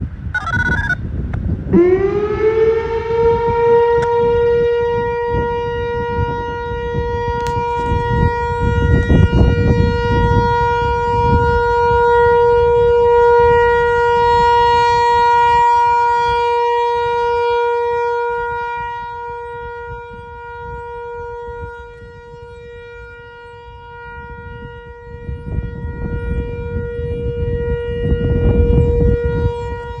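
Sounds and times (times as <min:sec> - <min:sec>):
tornado warning siren: 0:00.0 - 0:30.0.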